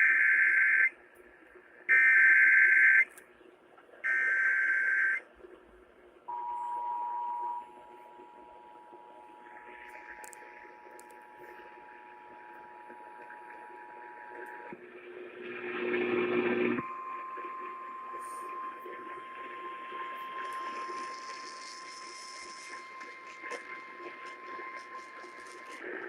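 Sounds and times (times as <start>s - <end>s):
radio static hiss: 7.8s - 26.0s
steady warning alarm tone: 16.0s - 25.8s.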